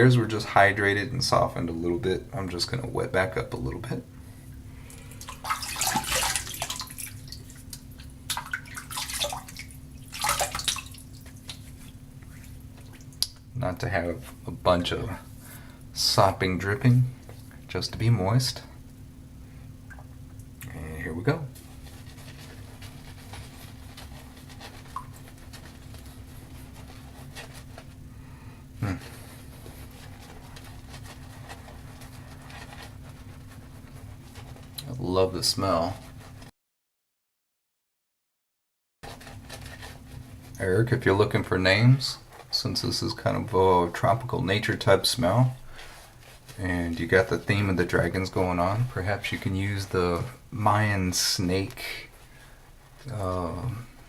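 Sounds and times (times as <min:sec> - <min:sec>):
steady low hum: 0:00.0 - 0:36.5
running water splashing: 0:05.0 - 0:13.4
shaving brush wet swishing: 0:05.0 - 0:13.4, 0:21.4 - 0:28.1, 0:29.0 - 0:36.4.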